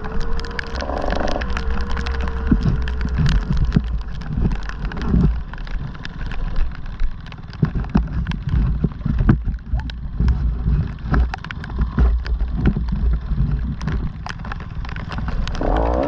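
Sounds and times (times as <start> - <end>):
faint whine: 0.0 - 7.2, 14.9 - 16.0
vehicle engine rumble: 0.0 - 16.0
clicks knocks and rattles: 1.5 - 16.0.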